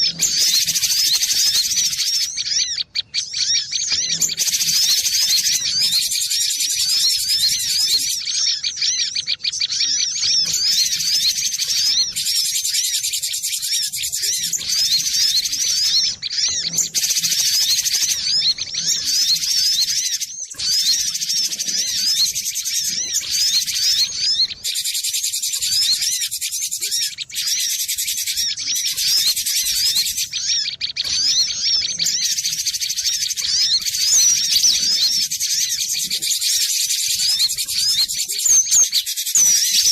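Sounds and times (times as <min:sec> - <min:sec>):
bird chirping rapidly: 0:00.0 - 0:39.9.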